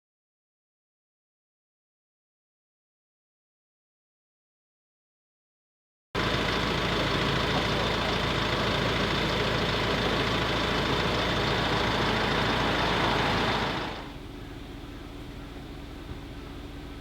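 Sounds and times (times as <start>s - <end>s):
engine idling hum: 6.2s - 17.0s.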